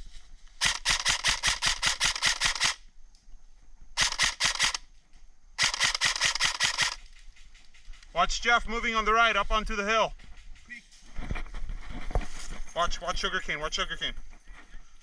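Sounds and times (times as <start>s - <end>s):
airsoft gun automatic bursts: 0.6s - 2.8s, 4.0s - 4.9s, 5.6s - 7.1s.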